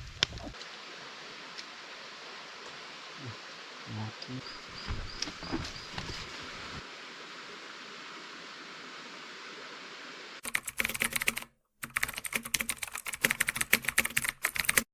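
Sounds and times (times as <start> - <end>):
steady hiss: 0.0 - 10.7
fast irregular clicks and taps: 10.4 - 14.9.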